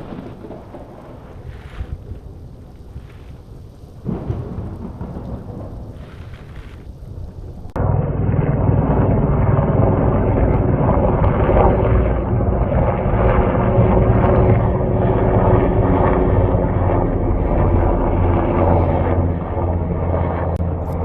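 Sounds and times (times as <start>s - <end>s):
helicopter droning: 7.0s - 21.0s.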